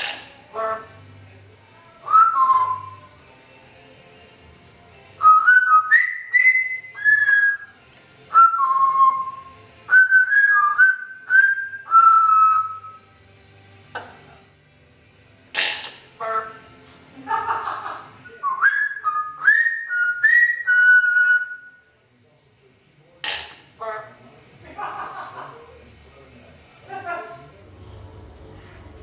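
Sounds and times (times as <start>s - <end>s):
parrot whistling: 0.0s - 1.0s, 2.0s - 3.2s, 5.2s - 13.0s, 15.6s - 16.7s, 17.5s - 21.9s.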